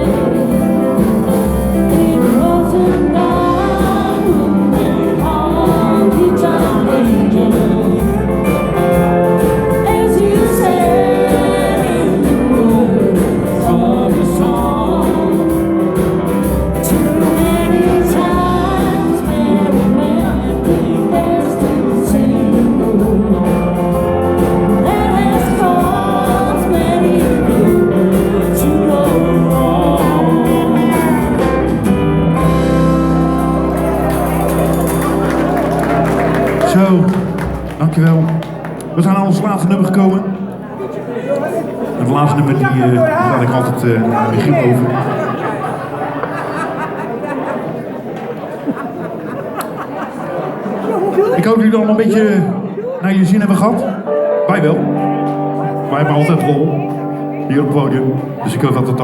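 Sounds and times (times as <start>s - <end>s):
person singing: 0.0s - 37.3s, 54.0s - 59.0s
live country band playing: 0.0s - 59.0s.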